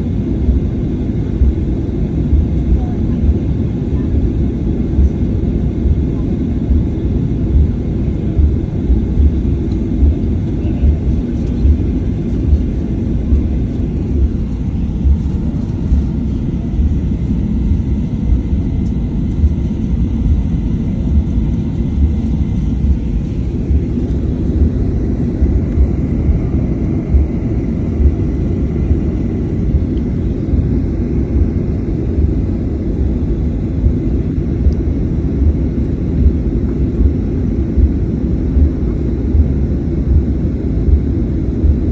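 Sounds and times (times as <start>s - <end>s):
jet engine rumble in cabin: 0.0s - 41.9s.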